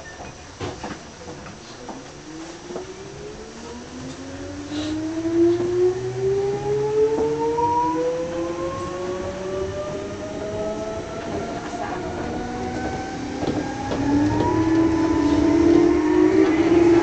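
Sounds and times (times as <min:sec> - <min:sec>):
electric train motor whine: 0:02.8 - 0:17.0
train wheel clicks: 0:11.2 - 0:16.8.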